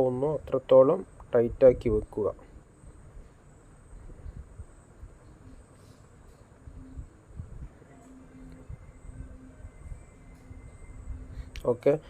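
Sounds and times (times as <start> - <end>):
faint high-pitched tone: 3.6 - 12.0.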